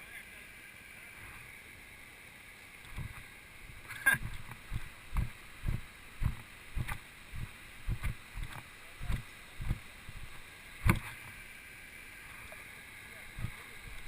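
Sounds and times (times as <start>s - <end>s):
footsteps on dirt trail: 4.2s - 11.2s.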